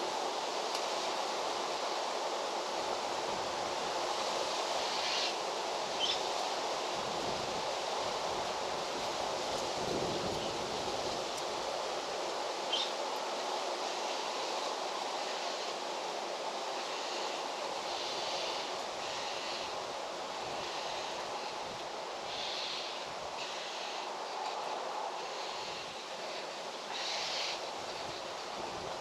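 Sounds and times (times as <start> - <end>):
rushing hiss: 0.0 - 29.0.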